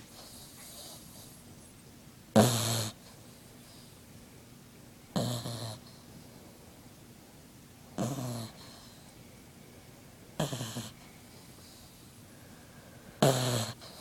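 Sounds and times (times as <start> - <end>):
puppy snoring: 0.0 - 1.5, 2.3 - 4.0, 5.1 - 6.1, 8.0 - 9.1, 10.4 - 12.2, 13.2 - 14.0.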